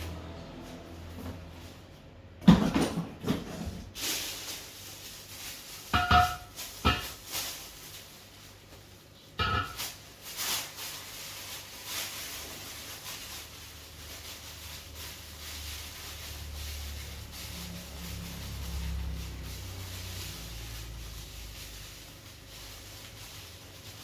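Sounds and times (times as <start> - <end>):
sharp knocks and clatters: 5.9 - 7.2.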